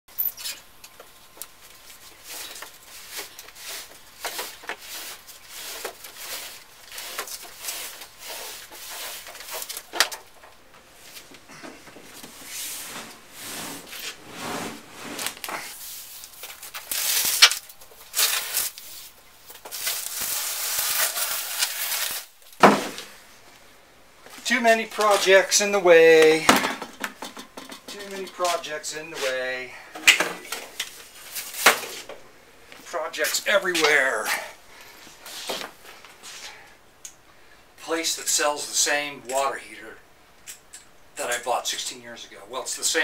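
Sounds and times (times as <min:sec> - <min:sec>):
rustling: 0:00.2 - 0:25.7
objects rubbing and scraping: 0:02.0 - 0:10.0, 0:10.9 - 0:17.2.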